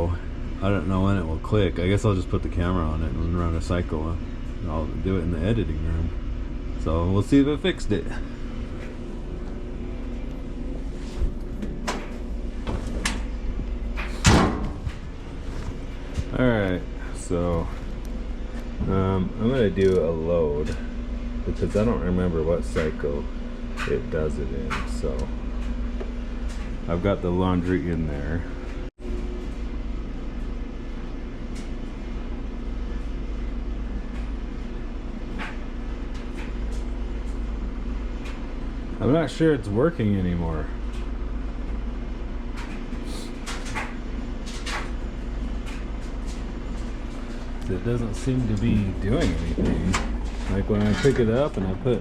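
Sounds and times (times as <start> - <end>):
low machine hum: 0.0 - 52.0.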